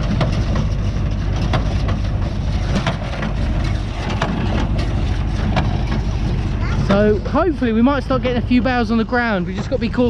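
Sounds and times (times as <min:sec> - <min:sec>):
baler mechanical knocks: 0:00.0 - 0:08.0
tractor engine drone: 0:00.0 - 0:10.0.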